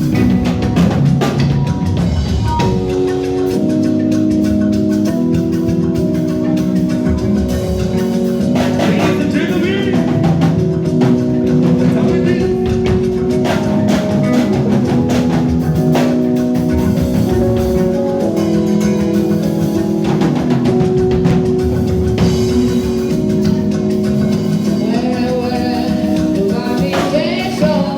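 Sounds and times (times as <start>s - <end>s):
drum kit keeping time: 0.0s - 27.9s
guitar or keyboard held notes: 0.0s - 27.9s.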